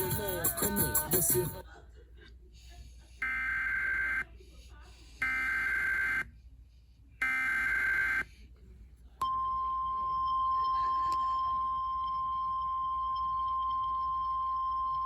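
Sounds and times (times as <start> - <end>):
steady warning alarm tone: 3.2 - 4.2, 5.2 - 6.3, 7.2 - 8.3.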